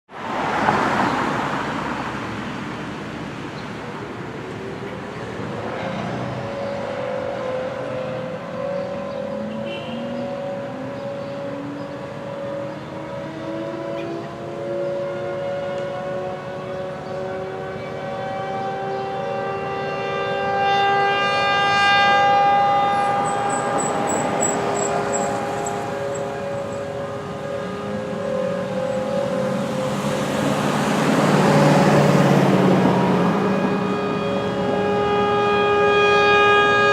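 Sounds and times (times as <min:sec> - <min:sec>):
outdoor warning siren steady tone: 0:04.6 - 0:36.9
warning siren winding up: 0:18.6 - 0:26.9.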